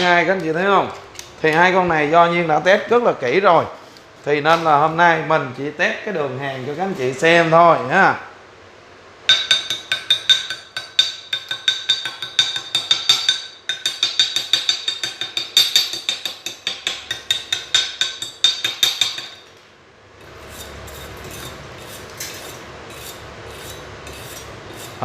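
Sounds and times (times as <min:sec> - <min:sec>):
hammer striking metal: 0:09.3 - 0:19.4
brush scraping metal: 0:20.2 - 0:25.0.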